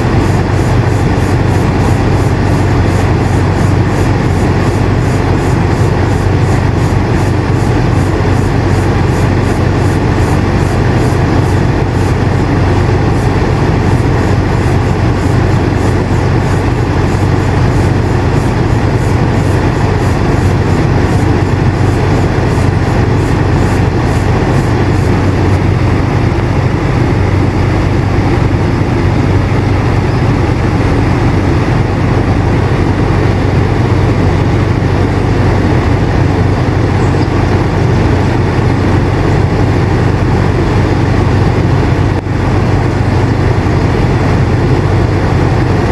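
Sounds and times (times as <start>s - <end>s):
air rushing: 0.0s - 41.8s
air conditioner humming: 0.0s - 45.9s.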